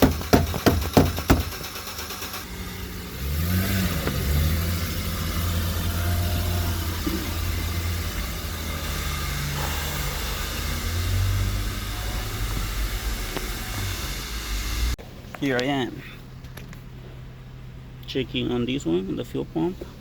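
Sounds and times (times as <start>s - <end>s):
rapid knocking on gas tank: 0.0s - 1.6s
car engine starting and idling: 0.0s - 20.0s.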